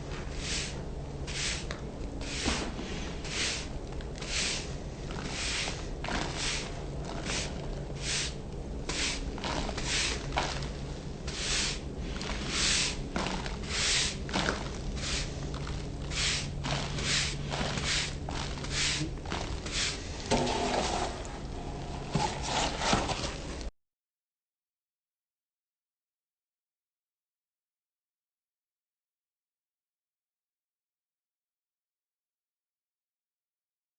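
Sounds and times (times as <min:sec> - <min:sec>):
hand tool scraping cement: 0:00.3 - 0:10.7, 0:11.3 - 0:23.6.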